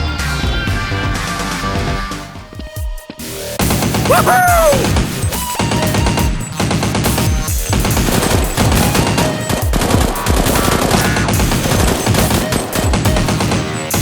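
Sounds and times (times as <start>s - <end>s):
music: 0.0s - 14.0s
rapid machine-gun fire: 5.8s - 14.0s.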